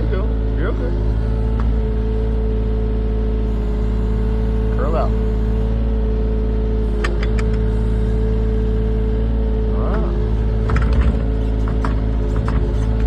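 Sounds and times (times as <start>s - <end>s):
excavator engine running: 0.0s - 13.0s
sharp clicks and knocks: 7.0s - 7.6s, 10.6s - 13.0s.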